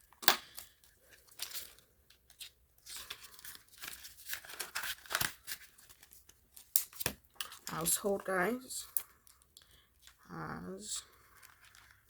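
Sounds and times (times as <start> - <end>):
paper banknotes rustling: 0.4 - 8.4.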